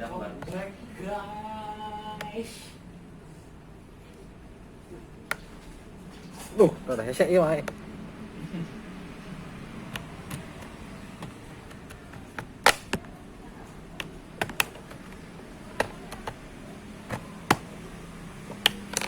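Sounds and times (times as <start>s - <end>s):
plastic case clips snapping: 9.9s - 13.2s, 13.8s - 16.4s, 17.0s - 17.8s, 18.5s - 19.0s.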